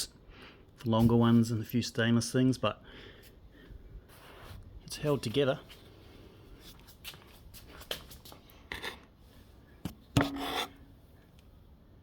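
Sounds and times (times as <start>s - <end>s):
handling rubbing and scraping: 6.6s - 10.9s.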